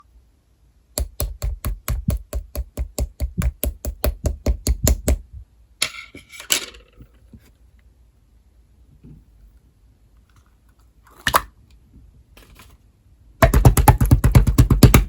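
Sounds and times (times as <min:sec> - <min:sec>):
rapid tapping on hard surface: 0:01.0 - 0:05.2, 0:13.4 - 0:15.0.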